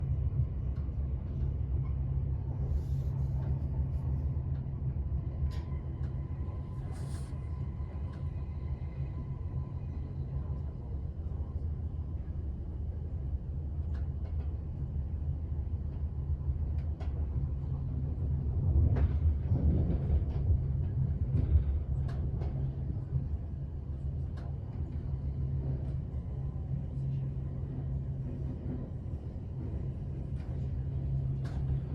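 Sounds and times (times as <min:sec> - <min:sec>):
train rumbling: 0:00.0 - 0:31.9
train clicks and knocks: 0:16.6 - 0:31.9.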